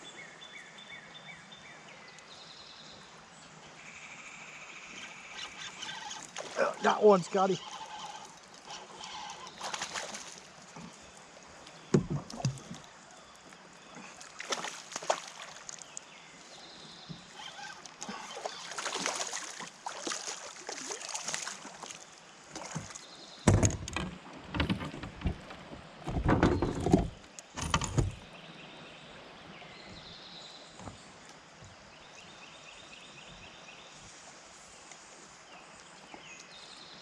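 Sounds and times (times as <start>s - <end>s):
paddle splashing in water: 5.4s - 11.1s, 11.8s - 13.0s, 13.6s - 16.0s, 17.0s - 28.2s.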